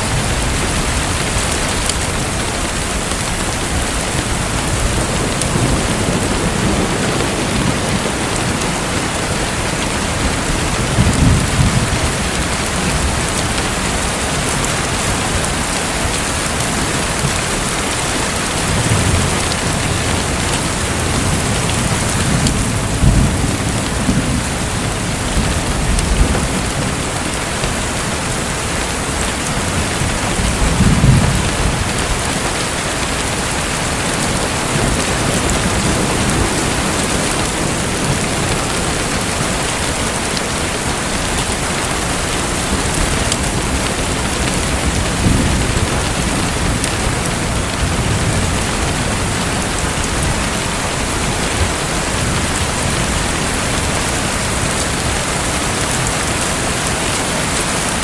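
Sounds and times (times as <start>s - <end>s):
distant thunder rumbling: 0.0s - 58.0s
steady rain falling: 0.0s - 58.0s.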